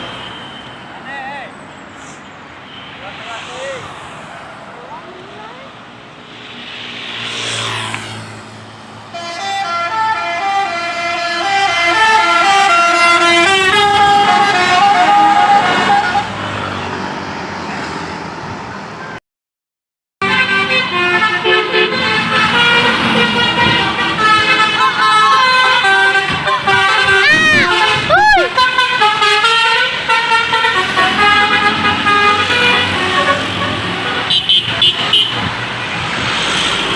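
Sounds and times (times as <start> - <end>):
vehicle engine and road noise: 0.0 - 19.2, 20.2 - 36.9
bus musical horn playing a tune: 9.1 - 16.5, 20.2 - 35.5.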